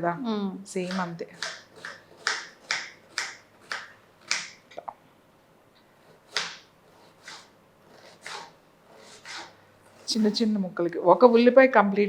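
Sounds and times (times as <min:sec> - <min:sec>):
knife chopping onion: 0:00.8 - 0:04.6, 0:06.0 - 0:09.6.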